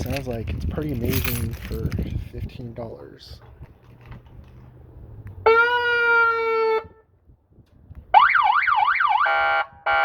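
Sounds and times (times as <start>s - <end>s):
siren yelp: 5.4s - 7.0s, 8.1s - 10.0s.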